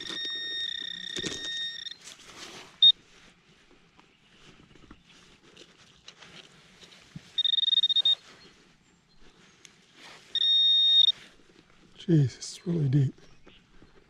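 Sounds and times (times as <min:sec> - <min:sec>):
metal detector high beep: 0:00.0 - 0:02.0, 0:07.4 - 0:08.5, 0:10.3 - 0:11.2.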